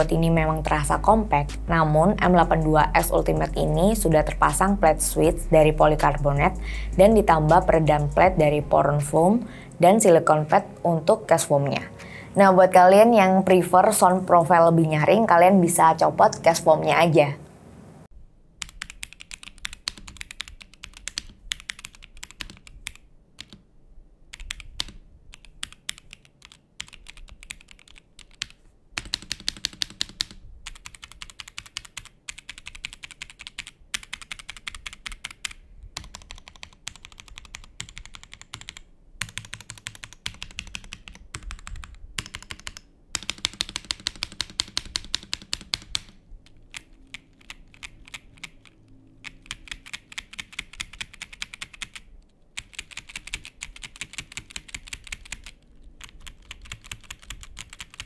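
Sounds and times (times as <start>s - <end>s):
fast typing on mechanical keyboard: 18.6s - 23.6s, 24.3s - 58.0s.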